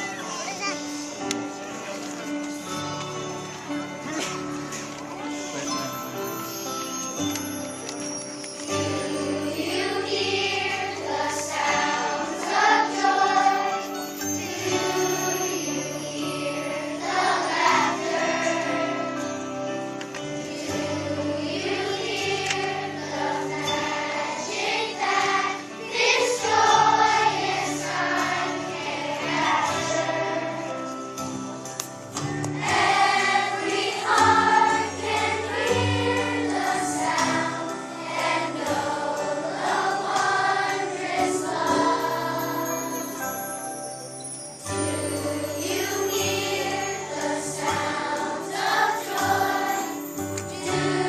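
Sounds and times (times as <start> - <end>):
choir singing: 8.5 - 31.0, 32.6 - 43.9, 44.6 - 51.0.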